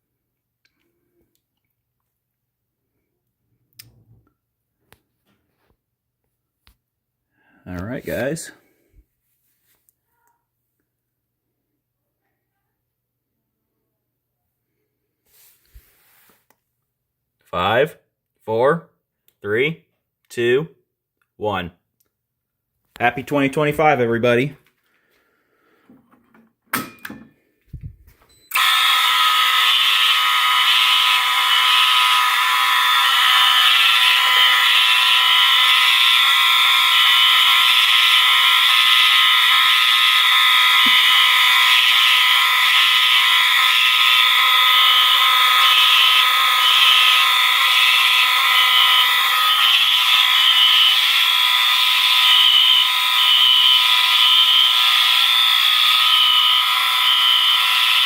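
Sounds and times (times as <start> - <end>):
fire alarm horns sounding: 28.5 - 58.0.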